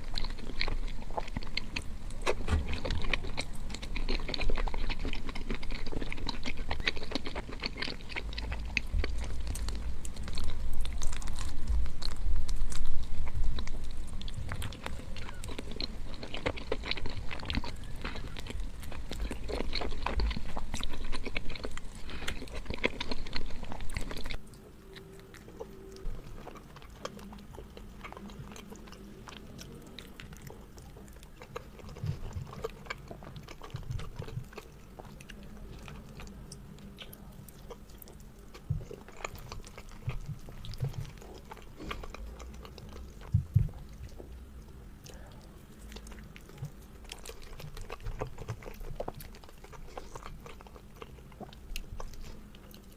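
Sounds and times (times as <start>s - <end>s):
person chewing food: 0.0s - 52.9s.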